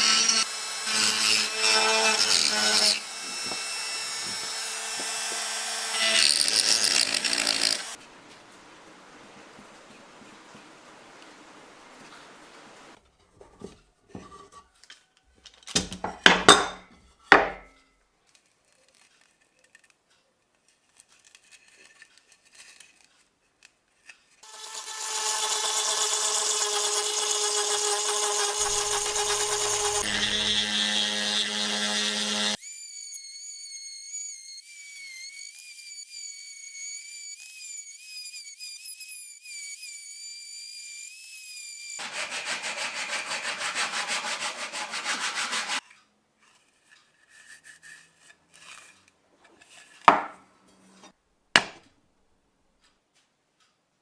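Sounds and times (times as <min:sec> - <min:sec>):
power tool whining: 0:00.0 - 0:08.0, 0:24.4 - 0:42.6.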